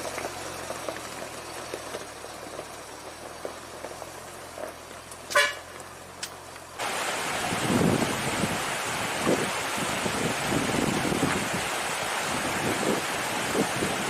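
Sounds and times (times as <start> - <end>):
truck engine hum: 0.0 - 14.0
vehicle horn toot: 5.3 - 5.7.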